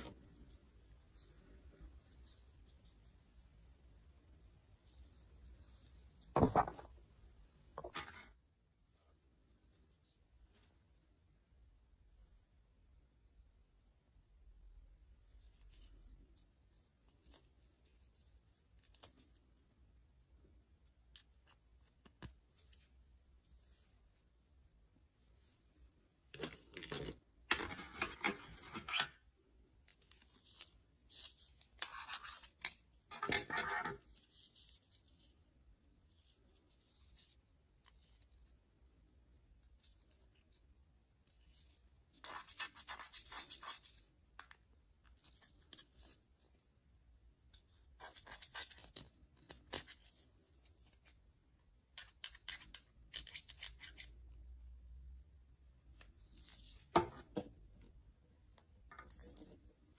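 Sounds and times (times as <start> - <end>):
plastic toy pieces clicking: 52.0 - 54.1.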